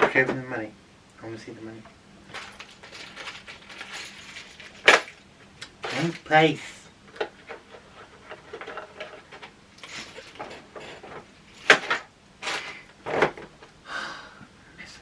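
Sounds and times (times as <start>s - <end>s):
game pieces sliding and rustling: 2.3s - 5.2s, 7.2s - 13.0s.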